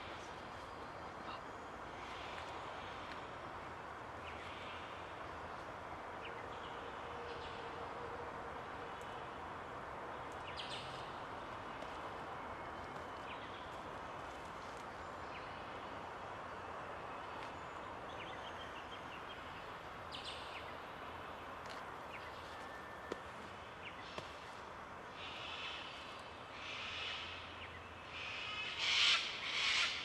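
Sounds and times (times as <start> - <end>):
steady outdoor hiss: 0.0 - 30.0.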